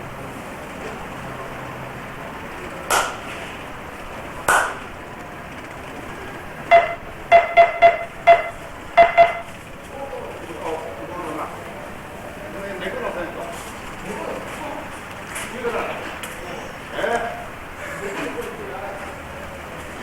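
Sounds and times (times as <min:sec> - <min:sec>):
short ringing clacks: 0:06.7 - 0:09.8.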